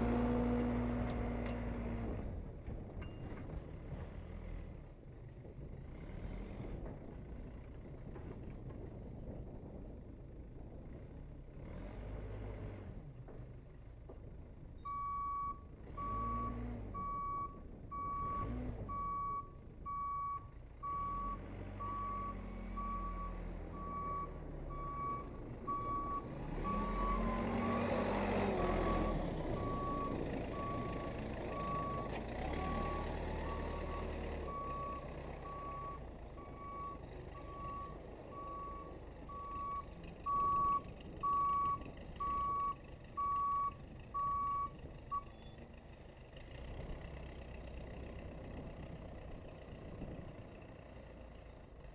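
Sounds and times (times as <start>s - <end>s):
backhoe engine revving: 0.0s - 2.4s, 15.8s - 50.9s.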